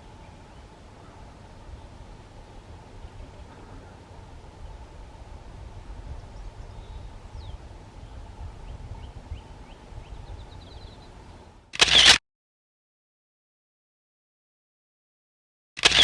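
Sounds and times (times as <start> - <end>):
wind rumble on microphone: 0.0 - 11.7
small birds chirping: 6.1 - 12.1
bird trill: 8.6 - 11.2.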